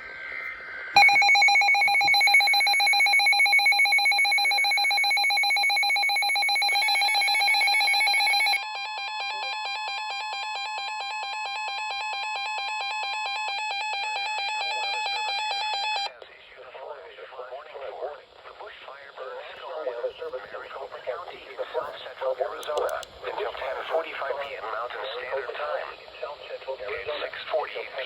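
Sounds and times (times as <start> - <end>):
harsh two-tone alarm: 1.0 - 16.1.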